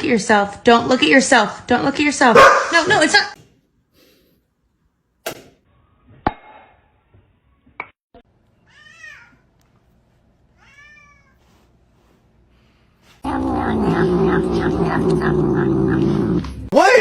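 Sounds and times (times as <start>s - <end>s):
cat meowing: 10.6s - 11.4s.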